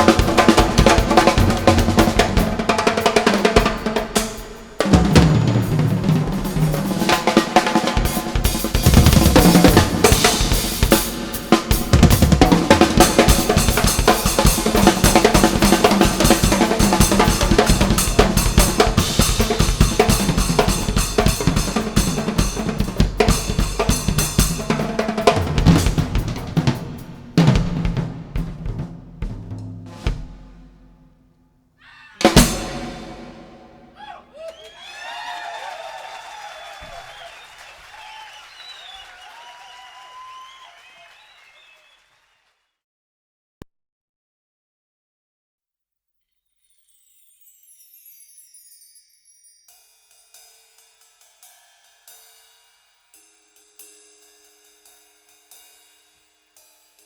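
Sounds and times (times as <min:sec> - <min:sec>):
drum-heavy music: 0:00.0 - 0:31.0, 0:32.2 - 0:34.4.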